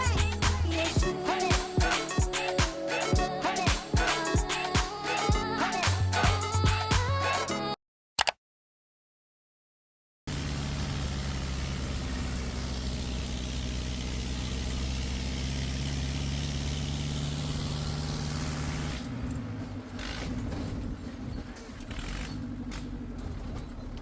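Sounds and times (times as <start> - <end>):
vehicle engine running: 0.0 - 2.0, 10.3 - 24.0.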